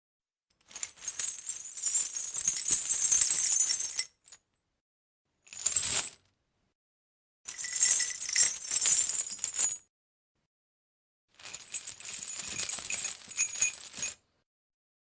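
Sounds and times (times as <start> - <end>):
metal chain rattling: 11.5 - 14.2.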